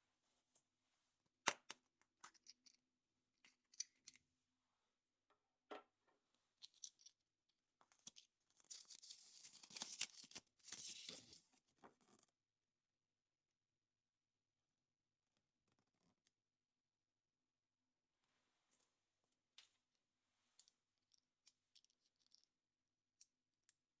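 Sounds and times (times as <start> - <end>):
wrapper crinkling and tearing: 8.7 - 11.2.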